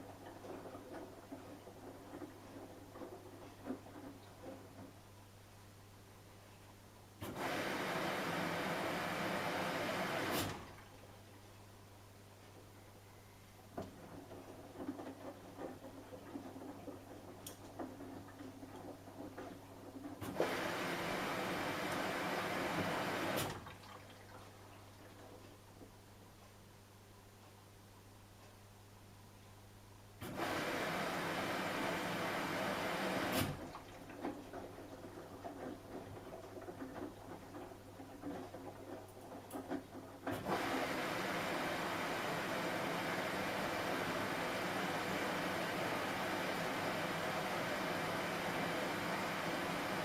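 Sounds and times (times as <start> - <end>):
water rushing into washing machine: 0.0 - 4.9, 7.2 - 11.0, 13.8 - 25.4, 30.2 - 50.0
washing machine humming: 0.0 - 26.6, 30.1 - 50.0
water sloshing in drum: 23.5 - 25.4.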